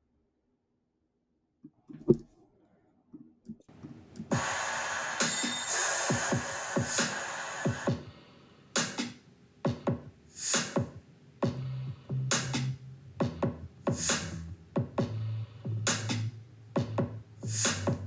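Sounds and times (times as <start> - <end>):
electronic drum loop: 3.9 - 8.2, 8.8 - 15.2, 15.8 - 18.0.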